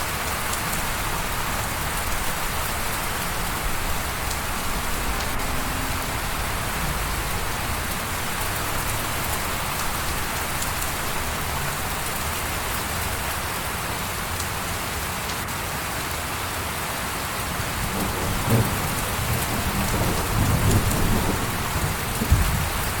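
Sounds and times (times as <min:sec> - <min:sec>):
rain pattering: 0:00.0 - 0:23.0
low rumble: 0:02.1 - 0:10.6.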